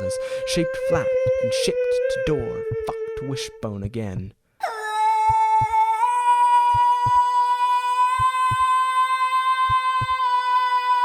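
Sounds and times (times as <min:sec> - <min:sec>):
low heartbeat-like thumps: 0:00.8 - 0:01.8, 0:02.4 - 0:03.2, 0:05.2 - 0:05.8, 0:06.7 - 0:07.4, 0:08.1 - 0:08.8, 0:09.6 - 0:10.3.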